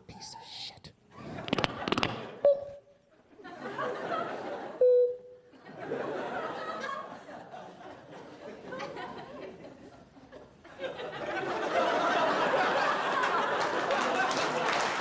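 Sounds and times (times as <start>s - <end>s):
audience laughing: 3.1s - 4.8s, 5.5s - 15.0s
loud applause: 11.5s - 15.0s.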